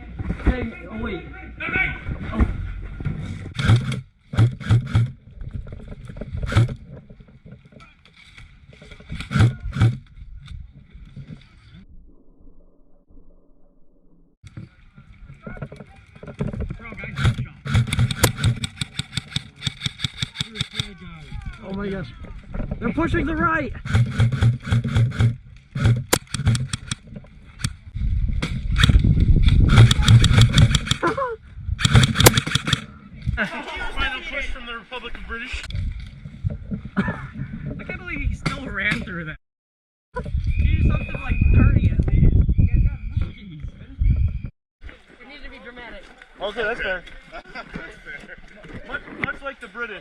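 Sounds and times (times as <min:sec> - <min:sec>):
airsoft gun shots: 0:17.2 - 0:20.9, 0:31.8 - 0:32.8.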